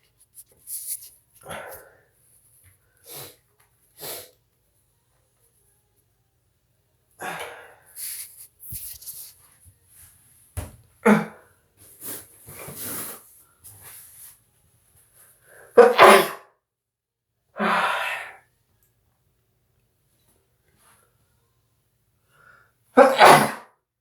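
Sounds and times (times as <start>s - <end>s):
person sneezing: 7.2s - 8.3s, 11.0s - 11.4s, 15.8s - 16.4s, 23.0s - 23.7s.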